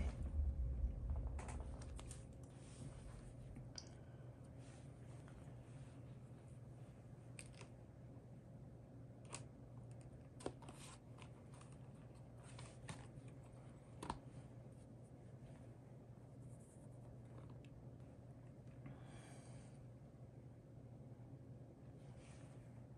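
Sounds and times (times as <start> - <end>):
low steady hum: 0.0 - 22.9.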